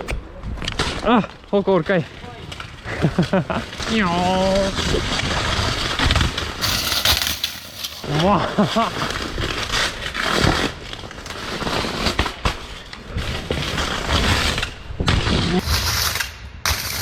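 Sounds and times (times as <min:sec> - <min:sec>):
bike rim scraping rattle: 0:04.6 - 0:08.3.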